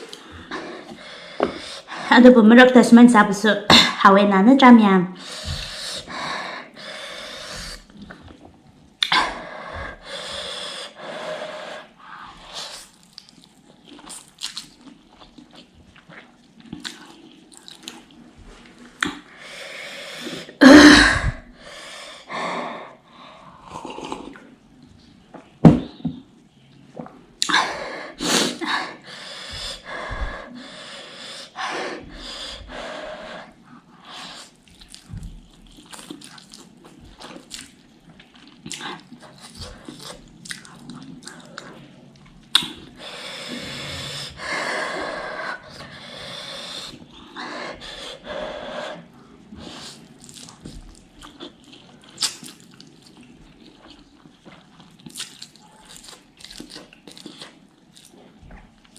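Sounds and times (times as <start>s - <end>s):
person chewing: 0.0s - 1.6s, 12.0s - 19.4s, 23.1s - 31.1s, 33.8s - 48.2s, 48.9s - 58.9s.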